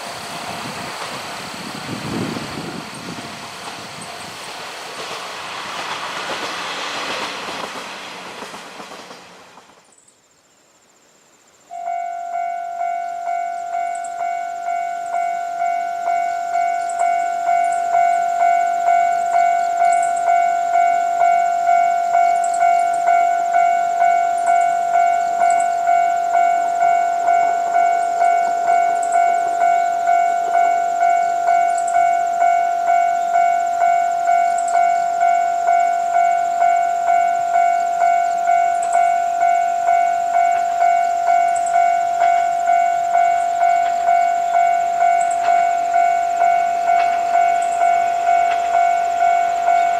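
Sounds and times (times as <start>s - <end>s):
diesel train passing: 0.0s - 10.1s, 11.7s - 49.9s.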